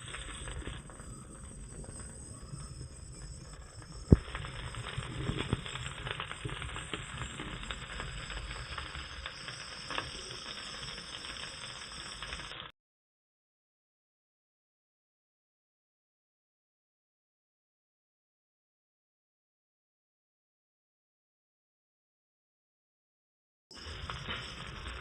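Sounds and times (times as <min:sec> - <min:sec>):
fish sizzling in a frying pan: 0:00.0 - 0:12.7, 0:23.7 - 0:25.0.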